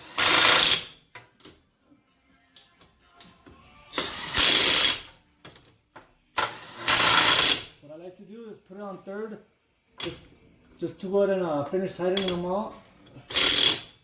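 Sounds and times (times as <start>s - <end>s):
impact wrench bursts: 0.0s - 1.0s, 4.0s - 5.1s, 6.4s - 7.7s, 13.3s - 14.0s.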